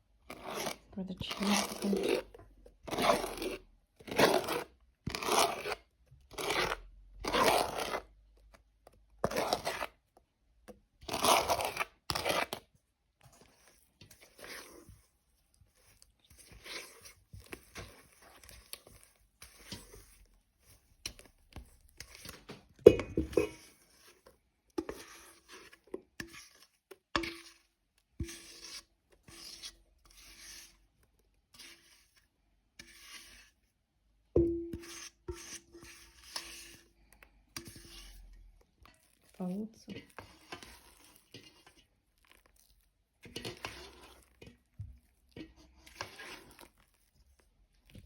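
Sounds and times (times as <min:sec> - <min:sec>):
utensil scraping mixing bowl: 0:00.0 - 0:33.8, 0:34.4 - 0:48.0
sharp knocks against bowl: 0:34.4 - 0:34.8.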